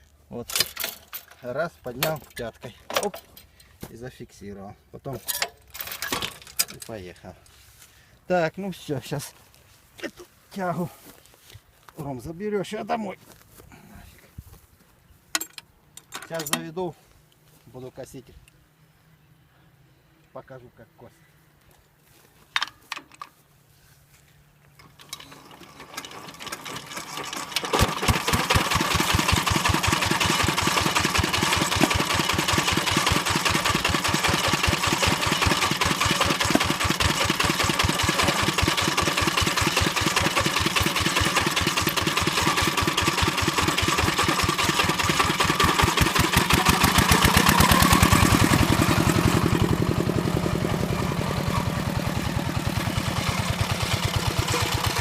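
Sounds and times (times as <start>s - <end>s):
tractor engine starting and running: 0.4s - 3.8s, 5.1s - 7.1s, 24.6s - 55.0s.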